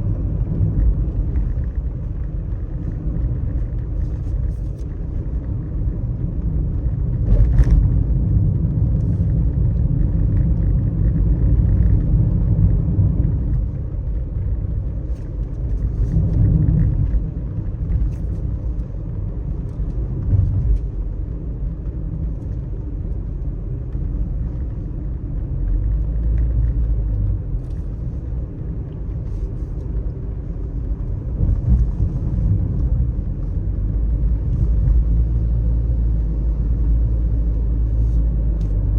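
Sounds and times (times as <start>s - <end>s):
car driving on wet road: 0.0s - 38.9s.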